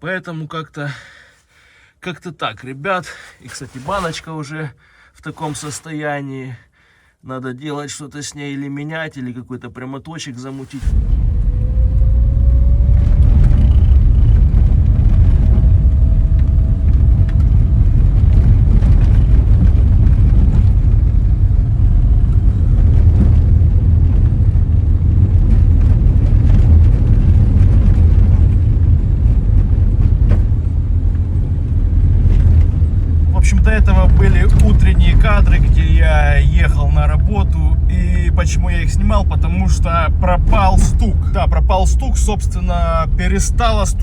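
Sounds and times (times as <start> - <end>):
car engine and tyres rumbling: 10.8 - 44.0.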